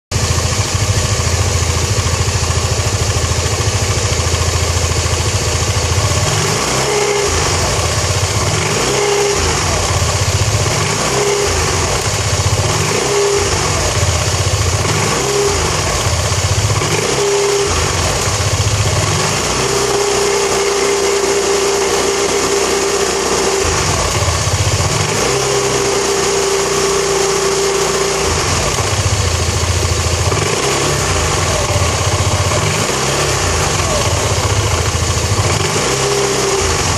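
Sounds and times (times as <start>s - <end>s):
scooter engine idling and revving: 0.1s - 36.9s.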